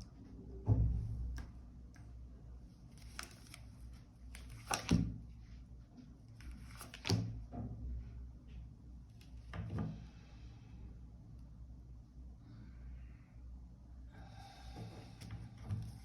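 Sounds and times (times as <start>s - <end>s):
cards rustling and tapping on table: 4.3s - 5.1s.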